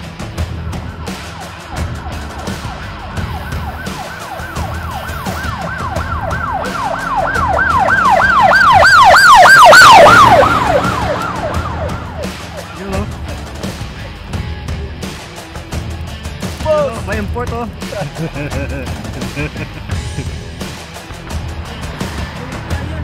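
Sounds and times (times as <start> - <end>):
emergency vehicle siren yelping: 0.4 - 14.2.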